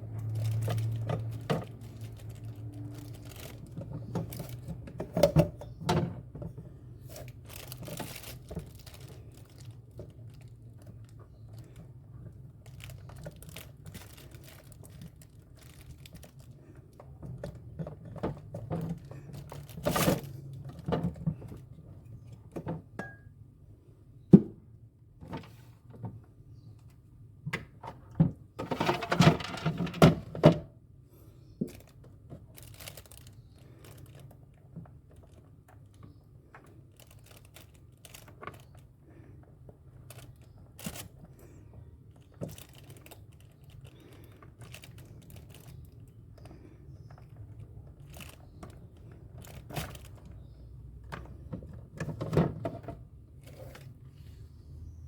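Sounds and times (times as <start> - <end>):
rattling and scraping: 28.6 - 30.4.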